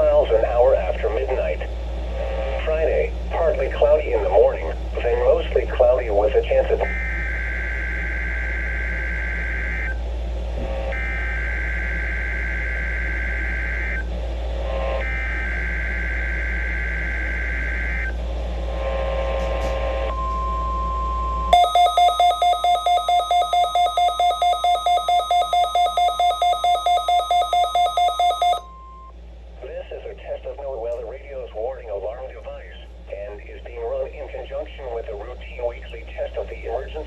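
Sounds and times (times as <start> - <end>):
faint steady tone: 20.1 - 29.2
data tone bursts over radio: 21.5 - 28.8
loud rapid beeping: 21.5 - 29.1.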